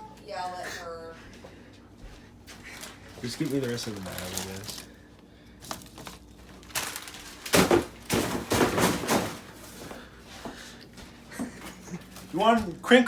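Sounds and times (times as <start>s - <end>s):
kitchen items clattering and knocking: 5.6s - 9.8s.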